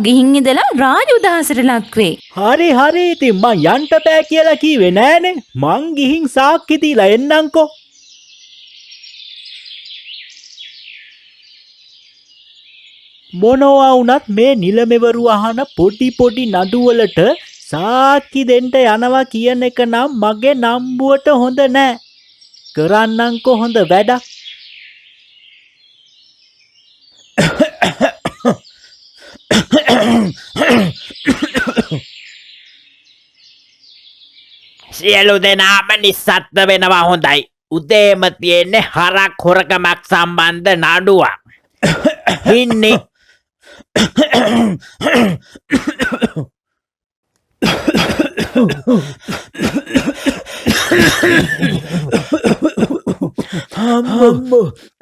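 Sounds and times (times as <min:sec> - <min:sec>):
man coughing: 0:27.4 - 0:28.6, 0:29.2 - 0:32.0, 0:41.8 - 0:43.1, 0:43.8 - 0:46.5, 0:47.6 - 0:55.0.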